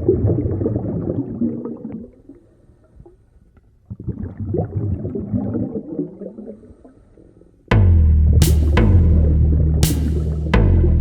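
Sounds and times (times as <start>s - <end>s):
coolant gurgling and bubbling: 0.0s - 2.4s, 3.8s - 6.7s.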